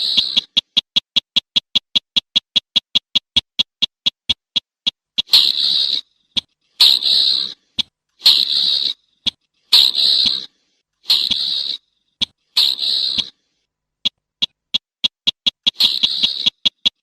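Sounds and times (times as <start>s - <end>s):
sharp ticks: 0.0s - 17.0s
rail bird harsh rasping calls: 5.2s - 13.6s, 15.6s - 17.0s.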